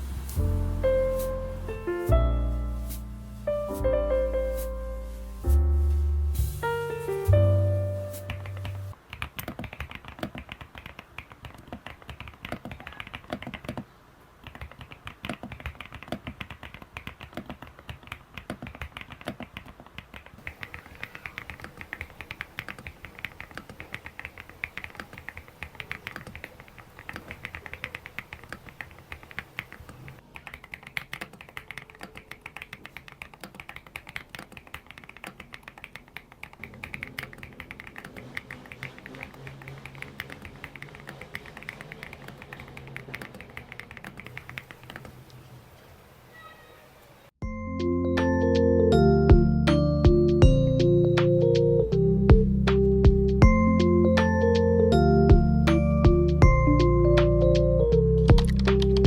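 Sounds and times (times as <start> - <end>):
mechanical keyboard typing: 8.3 - 45.1, 58.3 - 59.0.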